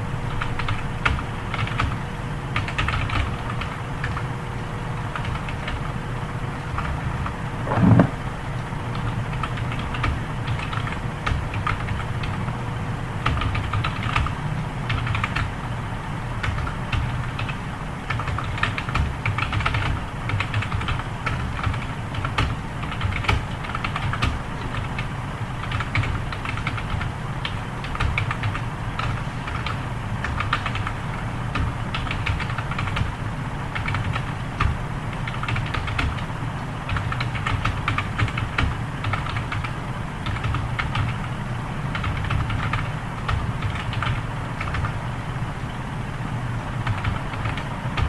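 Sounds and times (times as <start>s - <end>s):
fast keyboard typing: 2.6s - 4.2s, 7.7s - 8.1s, 9.0s - 12.4s, 13.2s - 14.3s, 14.9s - 15.4s, 16.4s - 25.0s, 25.6s - 27.1s, 27.8s - 30.9s, 31.5s - 33.1s, 33.8s - 36.2s, 36.9s - 44.9s, 46.8s - 48.0s
brief thump: 7.6s - 8.2s.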